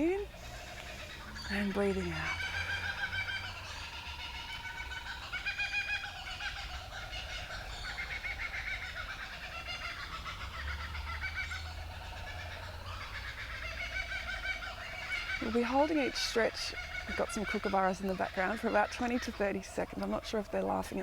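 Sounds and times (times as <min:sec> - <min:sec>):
kookaburras laughing: 0:00.0 - 0:21.0.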